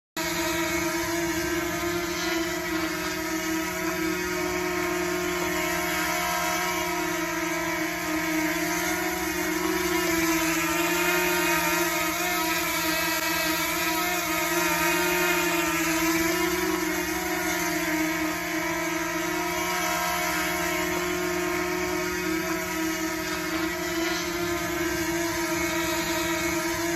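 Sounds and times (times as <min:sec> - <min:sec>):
drone buzzing whine: 0:00.2 - 0:26.9.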